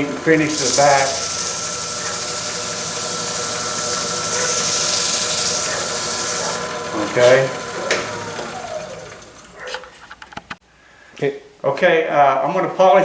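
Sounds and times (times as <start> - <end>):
sandpaper hissing on spinning wood: 0.0 - 7.9
lathe motor humming: 0.0 - 9.8.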